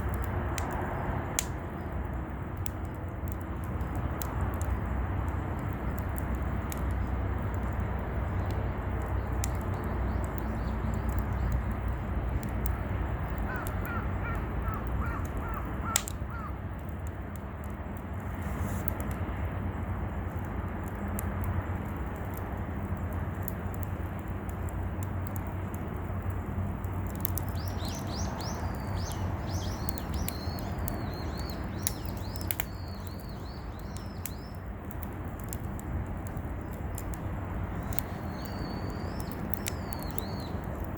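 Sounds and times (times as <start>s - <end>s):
low outdoor rumble: 0.0s - 40.9s
crow cawing: 13.4s - 16.6s
small bird twittering: 27.5s - 34.6s, 37.8s - 40.6s.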